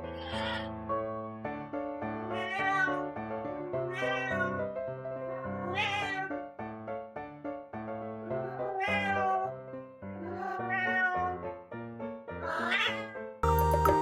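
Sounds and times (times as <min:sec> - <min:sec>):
cat meowing: 0:00.1 - 0:00.7, 0:02.2 - 0:04.6, 0:05.4 - 0:06.4, 0:08.2 - 0:09.5, 0:10.2 - 0:11.4, 0:12.4 - 0:13.2
background music: 0:13.4 - 0:14.0
louder music: 0:13.4 - 0:14.0.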